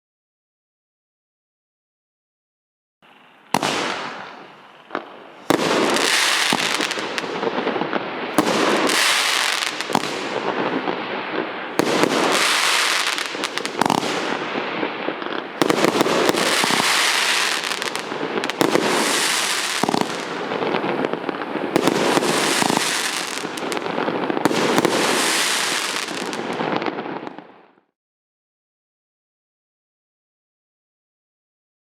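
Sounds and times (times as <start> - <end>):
fireworks bursts: 3.0 - 27.6.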